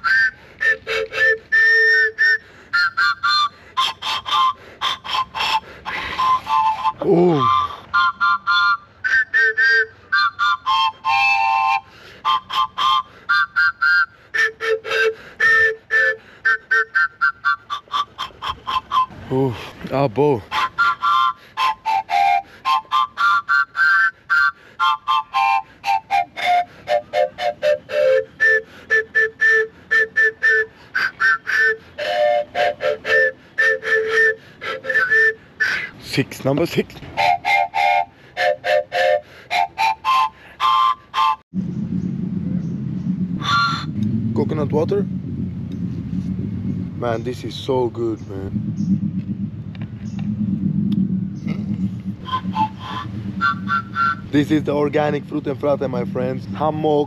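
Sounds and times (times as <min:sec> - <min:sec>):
harmonica playing a simple tune: 0:00.0 - 0:19.7, 0:20.4 - 0:35.9, 0:37.2 - 0:41.4, 0:52.2 - 0:55.2
flute tongued notes: 0:00.0 - 0:57.0.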